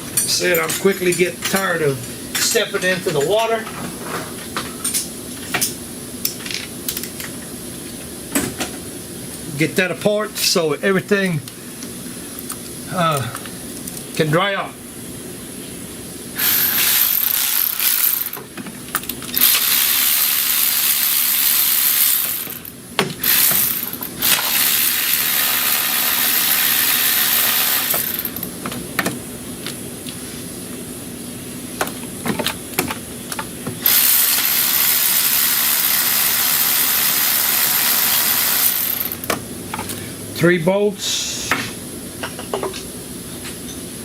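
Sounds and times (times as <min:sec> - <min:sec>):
metallic clinks of parts and tools: 0:00.2 - 0:01.8.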